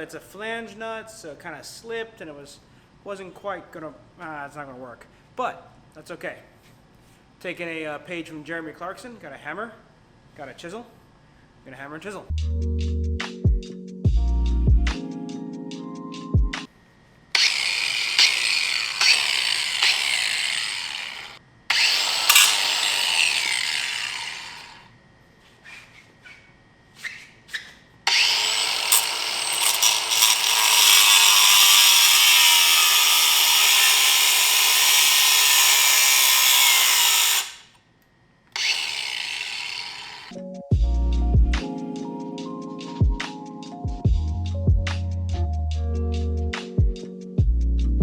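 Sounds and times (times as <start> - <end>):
power tool running against metal: 17.4 - 24.9, 28.1 - 37.7, 38.6 - 40.3.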